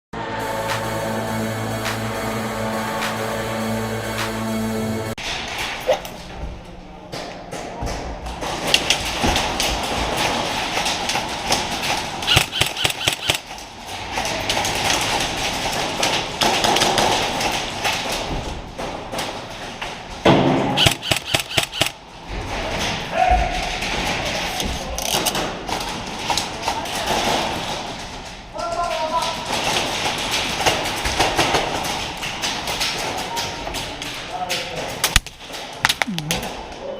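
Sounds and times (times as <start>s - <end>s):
airsoft gunfire bursts: 12.3s - 13.4s, 20.7s - 22.0s.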